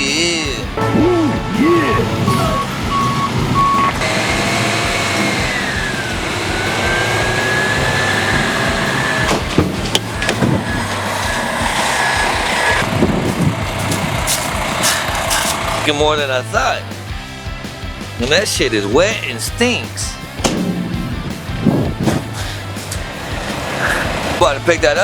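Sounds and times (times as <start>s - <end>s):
truck engine humming: 0.0s - 25.0s
knocks and bangs: 0.8s - 15.8s, 20.2s - 24.4s
hydraulic hoist whining: 0.8s - 16.0s, 20.2s - 24.4s.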